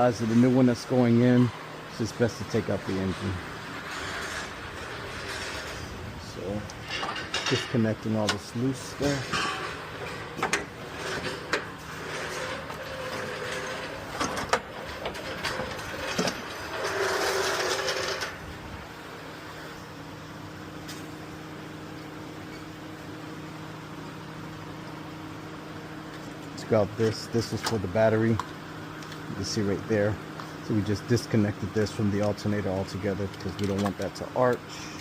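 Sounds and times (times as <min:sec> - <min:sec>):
steady low hum: 0:00.0 - 0:35.0.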